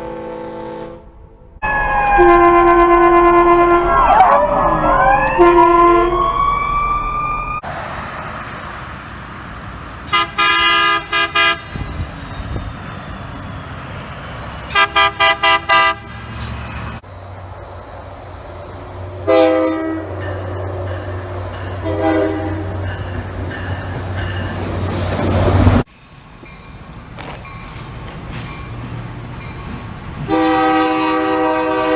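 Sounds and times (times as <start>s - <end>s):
multi-tone air horn blasts: 0.0s - 4.1s, 5.4s - 6.3s, 10.1s - 11.8s, 14.7s - 16.1s, 19.3s - 20.1s, 21.8s - 22.8s, 30.3s - 31.9s.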